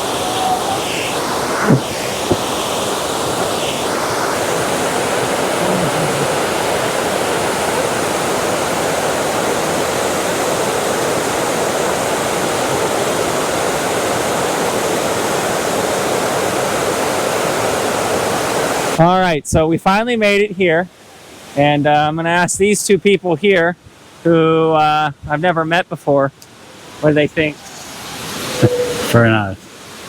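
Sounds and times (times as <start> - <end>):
waterfall rushing: 0.0 - 19.0, 26.5 - 30.0.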